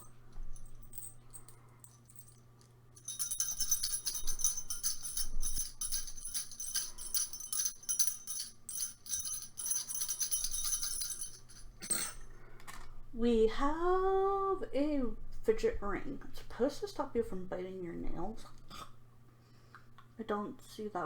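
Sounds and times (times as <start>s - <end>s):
small jingle bell shaking: 0.0s - 12.3s.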